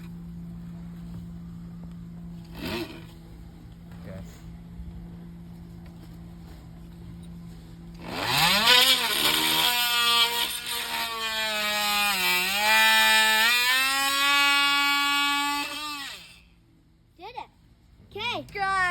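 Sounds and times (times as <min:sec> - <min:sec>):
oscillating tool cutting wood: 0:02.4 - 0:03.2, 0:07.9 - 0:16.5.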